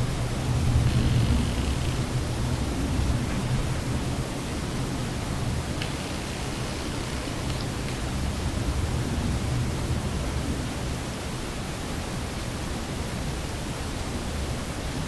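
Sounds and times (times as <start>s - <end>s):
even hiss: 0.0s - 3.9s, 5.0s - 8.6s
faint ticks: 0.6s - 2.2s, 5.7s - 8.2s.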